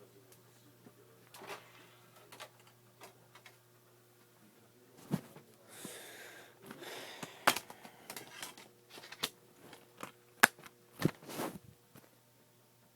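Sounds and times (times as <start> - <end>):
handling rustling: 8.2 - 11.7.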